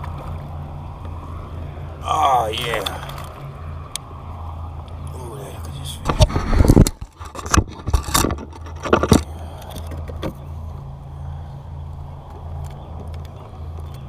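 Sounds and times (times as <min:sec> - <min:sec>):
low motor hum: 0:00.0 - 0:14.0
fish thrashing and scraping: 0:02.0 - 0:11.4.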